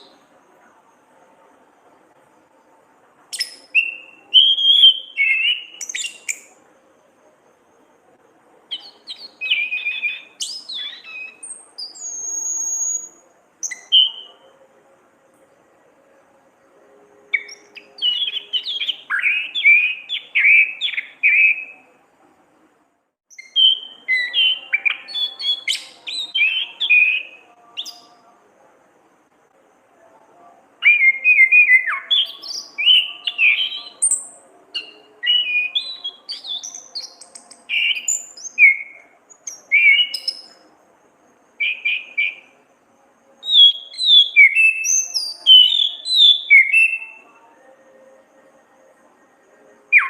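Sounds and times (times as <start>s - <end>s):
thrush singing: 23.4s - 28.7s, 29.3s - 40.8s.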